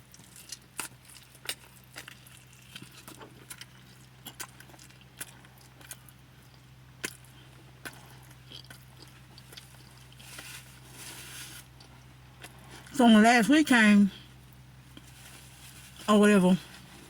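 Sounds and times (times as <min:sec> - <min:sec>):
person chewing: 0:00.0 - 0:12.9
steady low hum: 0:00.0 - 0:17.0.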